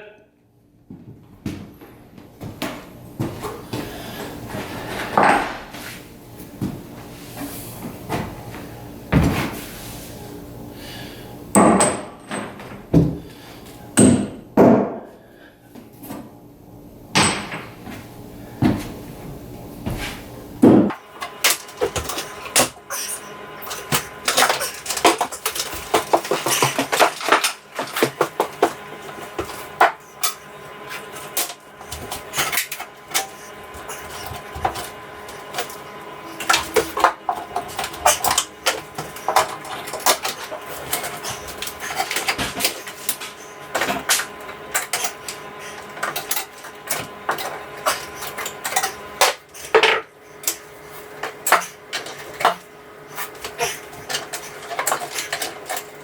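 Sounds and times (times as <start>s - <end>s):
hand tools clattering: 21.0s - 50.6s, 51.2s - 56.0s.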